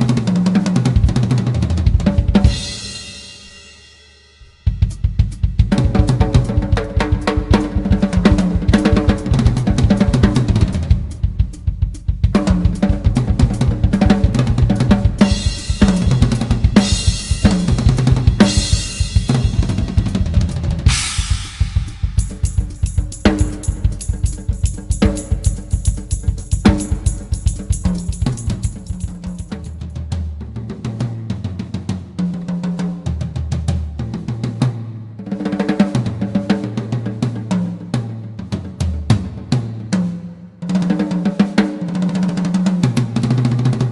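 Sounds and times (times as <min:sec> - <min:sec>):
drum kit played fast: 0:00.0 - 0:43.9
crash cymbals struck: 0:02.5 - 0:05.6, 0:15.1 - 0:29.8.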